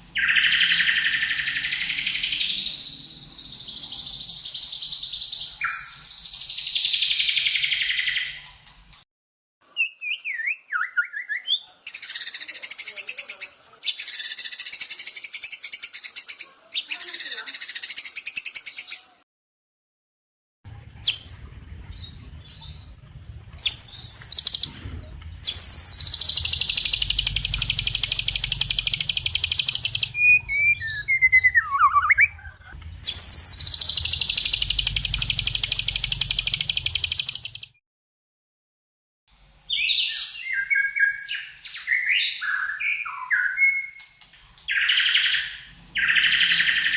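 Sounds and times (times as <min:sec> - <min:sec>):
songbird trilling: 0:00.2 - 0:08.4, 0:23.6 - 0:24.8, 0:25.4 - 0:37.8, 0:44.7 - 0:46.9
low hum: 0:20.7 - 0:37.5
bird sweeping whistles: 0:25.4 - 0:32.3, 0:33.0 - 0:37.7.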